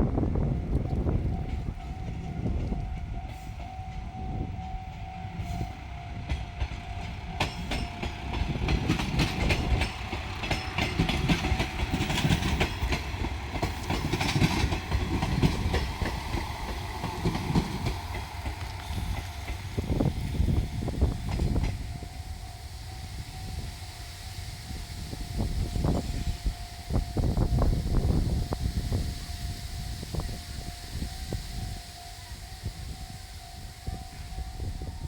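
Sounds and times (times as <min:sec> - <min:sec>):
diesel train passing: 0:00.0 - 0:35.0
train wheels clicking on rail joints: 0:00.2 - 0:35.0
level crossing warning bell: 0:19.0 - 0:24.2, 0:25.2 - 0:35.0.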